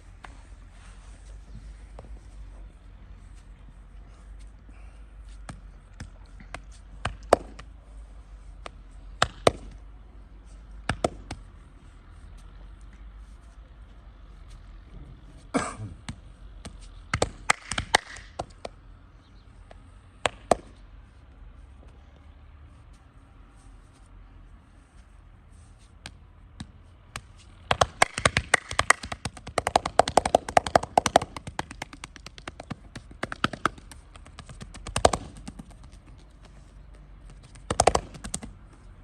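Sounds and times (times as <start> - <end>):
steady low hum: 0.0 - 17.6
massage smacks and cracks: 8.6 - 9.8, 17.1 - 18.8, 27.2 - 36.0.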